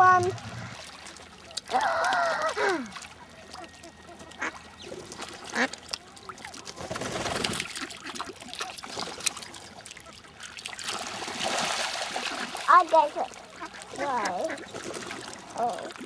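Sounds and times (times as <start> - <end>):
ducks quacking: 0.0 - 0.8, 3.4 - 5.8, 12.1 - 14.9.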